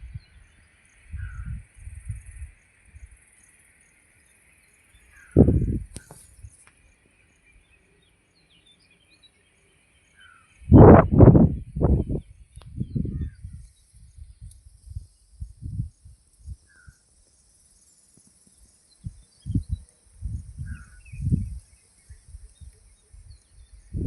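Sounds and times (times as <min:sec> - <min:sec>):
faint bird chirps: 0:00.0 - 0:24.0
low rumbles on microphone: 0:01.1 - 0:02.5, 0:05.3 - 0:06.5, 0:10.7 - 0:16.6.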